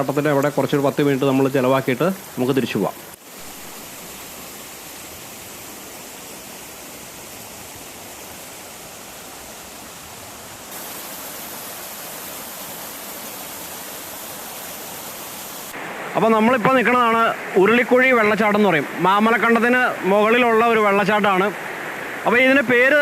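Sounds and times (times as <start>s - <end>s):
waterfall rushing over rocks: 0.0s - 23.0s.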